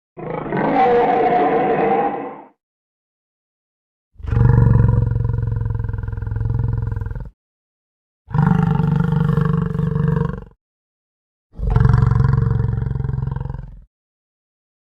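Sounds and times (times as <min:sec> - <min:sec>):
deep dinosaur roar: 0:00.2 - 0:02.5, 0:04.2 - 0:07.2, 0:11.6 - 0:13.8.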